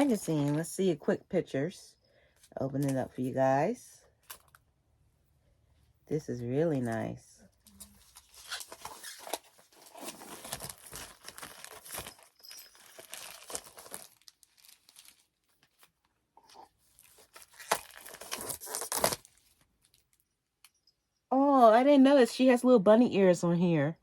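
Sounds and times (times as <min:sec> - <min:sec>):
magazine pages rustling: 0:06.7 - 0:20.0.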